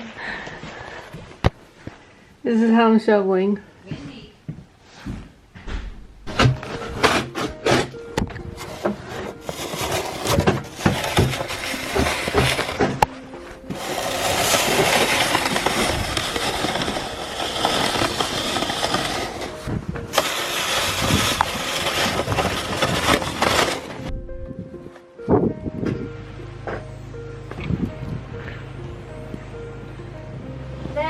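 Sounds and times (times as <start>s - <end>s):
snow shovel scraping snow: 8.6s - 12.8s, 13.7s - 24.1s.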